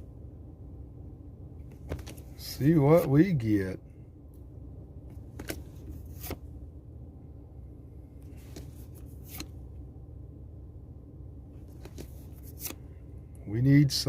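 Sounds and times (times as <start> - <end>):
low hum: 0.0 - 14.0
cards clicking and rustling: 1.7 - 2.3, 5.2 - 6.4, 8.3 - 9.6, 11.7 - 12.8.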